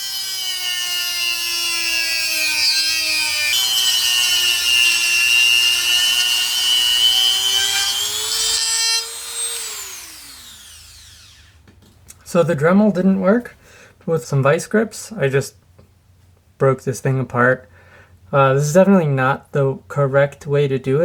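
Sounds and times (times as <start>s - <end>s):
rotary tool whining: 0.0s - 11.6s.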